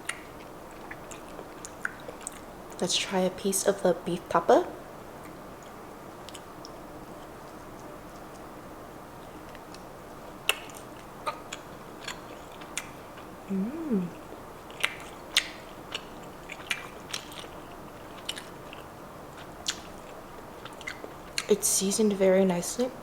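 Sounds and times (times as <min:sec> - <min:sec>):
person humming: 0:13.5 - 0:14.2
wet chewing mouth clicks: 0:20.7 - 0:21.5.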